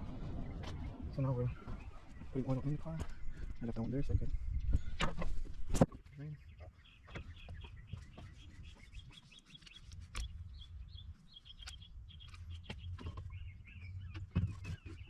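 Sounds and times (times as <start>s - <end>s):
low steady rumble: 0.0s - 5.7s
birds chirping: 0.0s - 15.0s.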